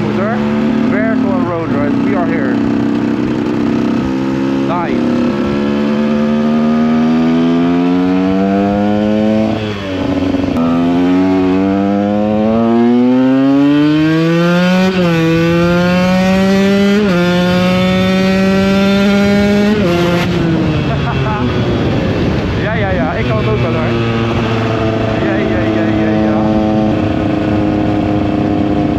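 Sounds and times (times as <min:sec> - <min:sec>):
two-stroke engine accelerating: 0:00.0 - 0:28.9.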